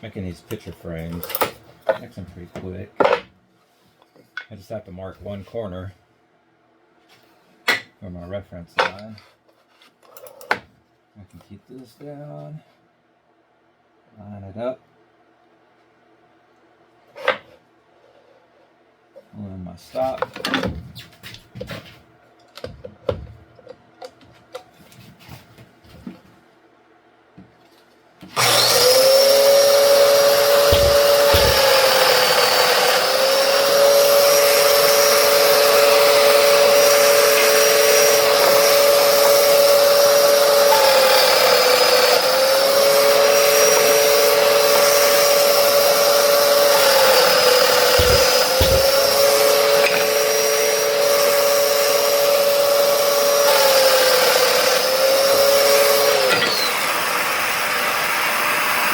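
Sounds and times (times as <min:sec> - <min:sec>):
joiner motor cutting: 0:28.4 - 0:58.9
low thumps: 0:30.4 - 0:31.9, 0:47.8 - 0:49.4.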